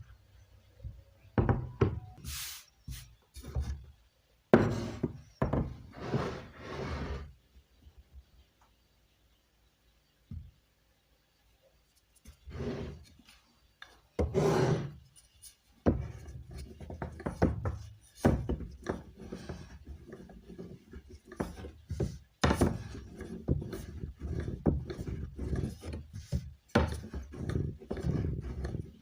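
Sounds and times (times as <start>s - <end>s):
knife chopping dough on wooden board: 15.8s - 29.0s.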